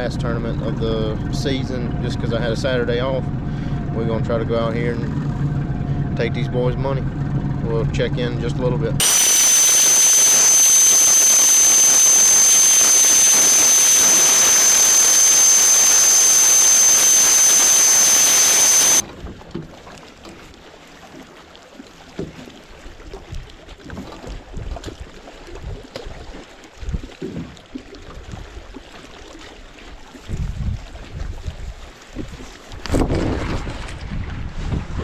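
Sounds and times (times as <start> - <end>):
boat motor rush and whine: 9.0 - 19.0
quiet water sound: 9.0 - 31.0.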